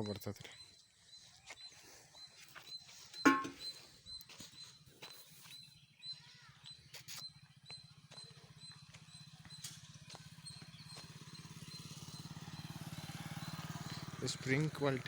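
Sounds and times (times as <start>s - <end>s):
faint engine running: 5.7s - 15.0s.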